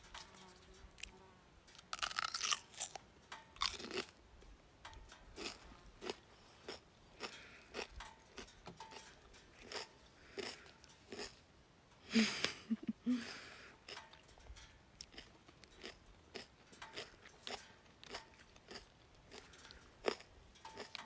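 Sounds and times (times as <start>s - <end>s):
cucumber crunching: 1.8s - 4.2s, 5.4s - 9.0s, 15.0s - 21.0s.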